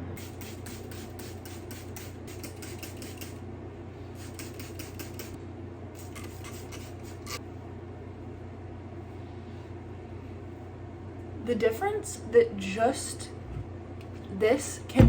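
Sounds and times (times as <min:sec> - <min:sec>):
steady low hum: 0:00.0 - 0:15.0
spray bottle squirts: 0:04.2 - 0:05.4.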